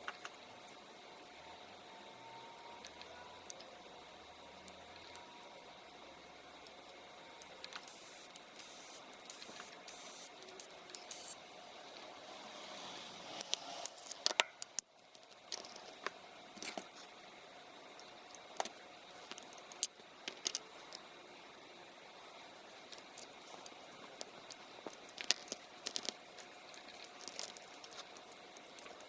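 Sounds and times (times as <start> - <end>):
small parts and tools clicking: 2.6 - 4.0, 4.6 - 11.4, 13.2 - 16.9, 18.0 - 21.1, 22.8 - 29.0.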